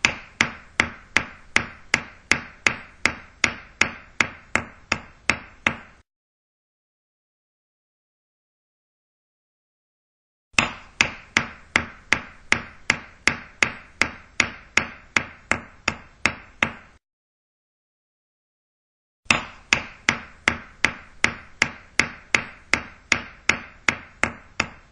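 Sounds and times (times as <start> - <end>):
hammer blows ringing: 10.6 - 15.6, 19.3 - 24.7.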